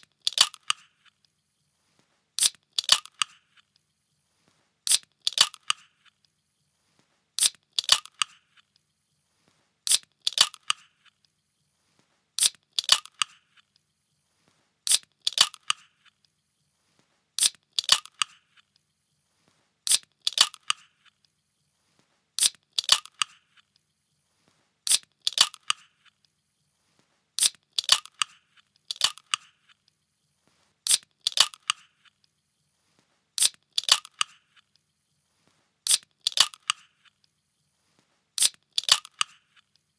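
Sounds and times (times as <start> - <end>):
pull-tab can cracking open: 2.4 - 3.4, 7.4 - 8.4, 9.9 - 10.8, 12.4 - 13.3, 14.9 - 15.8, 17.4 - 18.4, 24.9 - 25.8, 27.4 - 29.5, 30.9 - 31.8, 33.4 - 34.4, 35.9 - 36.8, 38.4 - 39.4.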